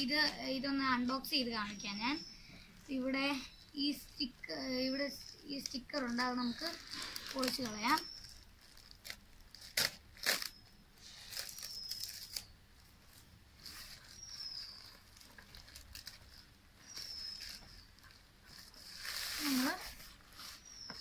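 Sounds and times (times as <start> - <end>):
sticker ripping off cardboard: 9.6 - 10.6.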